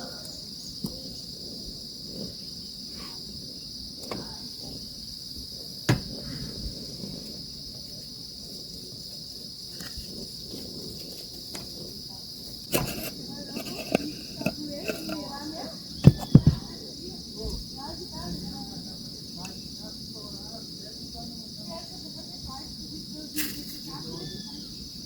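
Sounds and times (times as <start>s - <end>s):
insects chorus: 0.0s - 25.0s
sharp knocks: 5.9s - 6.1s, 16.0s - 16.6s.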